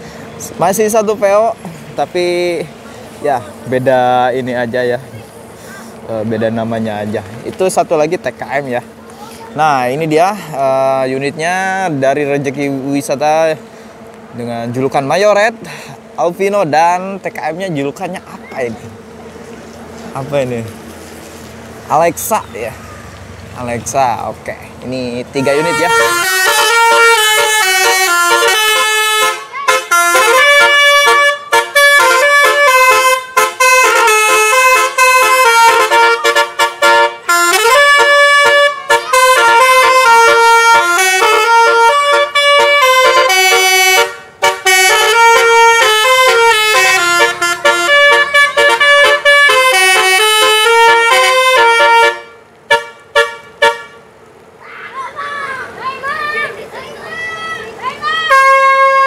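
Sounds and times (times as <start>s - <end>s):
bus musical air horn tune: 25.4s - 54.1s, 58.1s - 59.0s.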